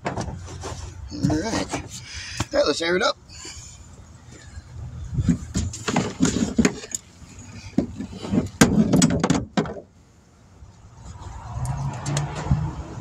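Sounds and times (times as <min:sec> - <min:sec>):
tools and air hose clattering: 0:05.2 - 0:09.8.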